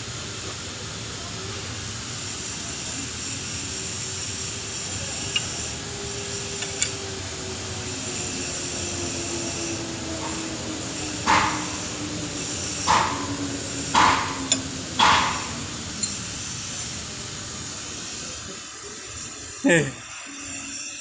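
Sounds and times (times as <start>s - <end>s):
car engine droning with whine: 2.6s - 18.0s.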